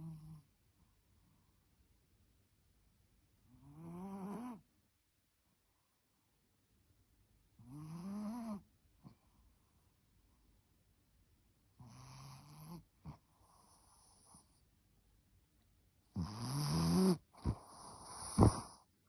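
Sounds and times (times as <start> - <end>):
pet snoring: 3.5 - 4.6, 7.6 - 8.6, 11.8 - 14.5, 16.1 - 18.9.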